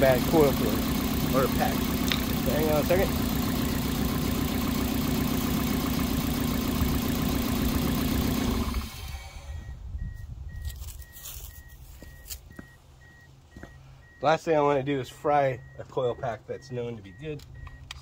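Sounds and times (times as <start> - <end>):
car engine idling: 0.0 - 10.0
car chime beeping: 9.5 - 18.0.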